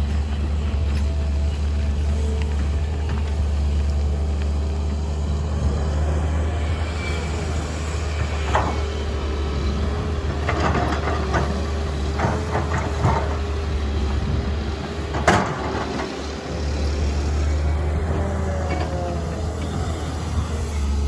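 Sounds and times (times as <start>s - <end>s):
excavator diesel engine running: 0.0s - 21.0s
knocks and clanks: 10.2s - 13.7s, 15.0s - 16.4s.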